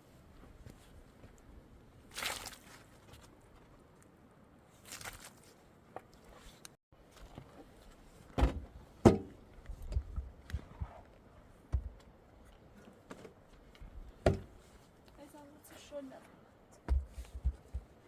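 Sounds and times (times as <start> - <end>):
wood knocks and thumps: 14.2 - 14.6.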